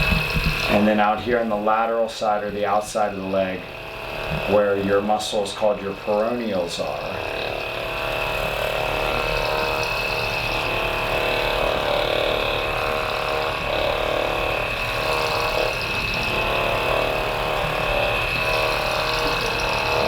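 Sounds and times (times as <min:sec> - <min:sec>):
massage gun buzzing: 0:00.0 - 0:20.0.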